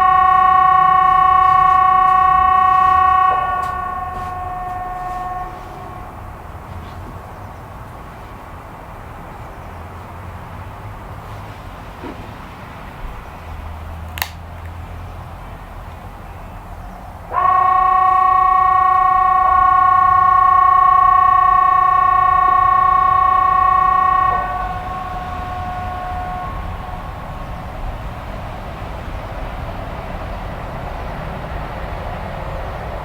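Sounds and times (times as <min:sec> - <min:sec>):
warning siren steady tone: 0:00.0 - 0:09.4, 0:17.0 - 0:33.0.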